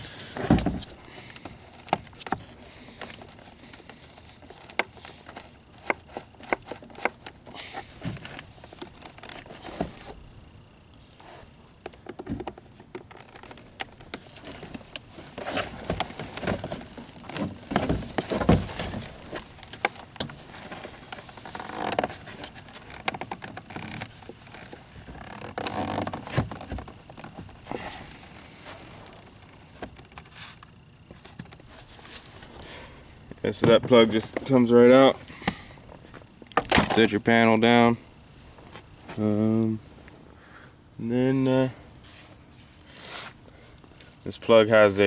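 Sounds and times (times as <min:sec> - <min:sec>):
plastic clicks and scrapes: 0:01.3 - 0:07.5.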